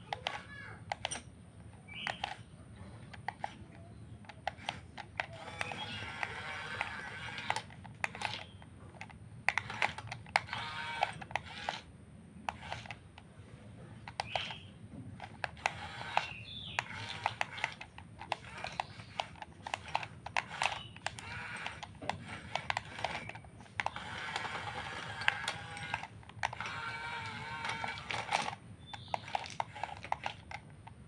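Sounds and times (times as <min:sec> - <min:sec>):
small electric motors whining: 0:01.9 - 0:11.9, 0:12.5 - 0:13.2, 0:14.0 - 0:30.9
rapid clicks and rattles: 0:14.0 - 0:31.0.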